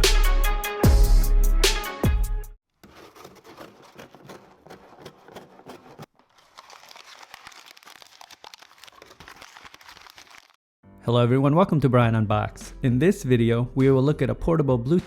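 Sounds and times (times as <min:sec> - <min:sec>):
packaging crinkling: 0:02.7 - 0:10.6.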